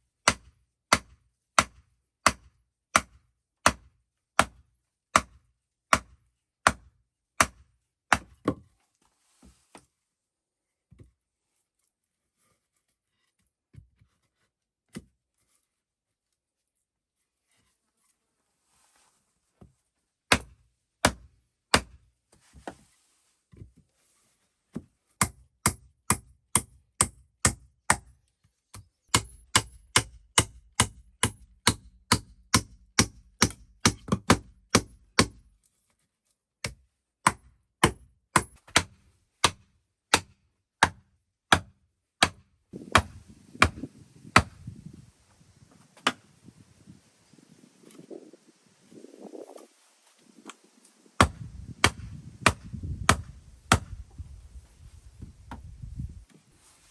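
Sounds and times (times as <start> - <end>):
hand tool striking wood: 0.2 - 8.7, 20.3 - 22.0, 24.7 - 35.5, 36.6 - 44.6, 46.0 - 46.2, 51.2 - 54.0
scraping and rustling: 22.4 - 24.7, 54.2 - 56.9.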